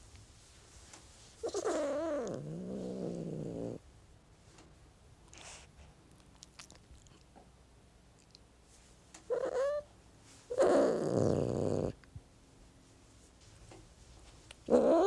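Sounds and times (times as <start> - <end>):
cat growling: 1.4 - 3.8, 10.5 - 12.0, 14.6 - 15.0.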